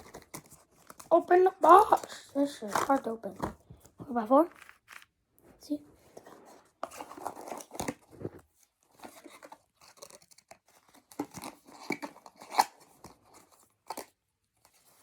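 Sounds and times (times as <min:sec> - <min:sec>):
plastic cube clicking and rasping: 0:00.0 - 0:03.6, 0:09.0 - 0:14.8.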